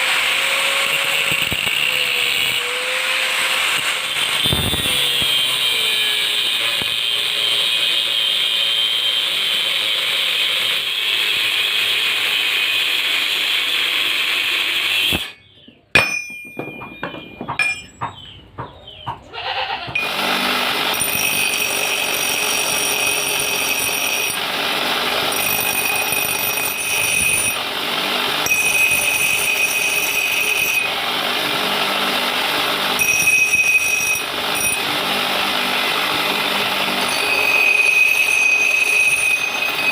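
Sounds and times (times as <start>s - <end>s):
metalworking machinery running: 0.0s - 15.4s, 16.0s - 18.7s, 20.0s - 39.9s
sharp knocks: 15.7s - 19.3s
high machine whine: 20.0s - 39.9s.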